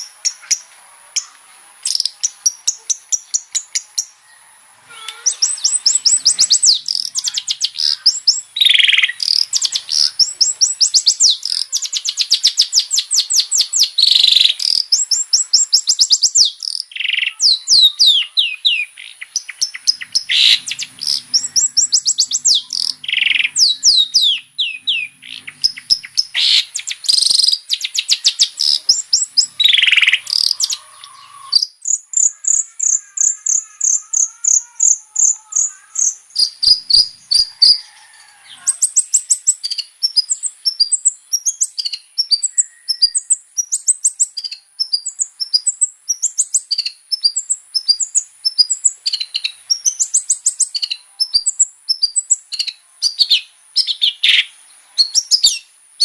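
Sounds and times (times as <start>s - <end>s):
bird singing chirps and trills: 0.0s - 55.7s.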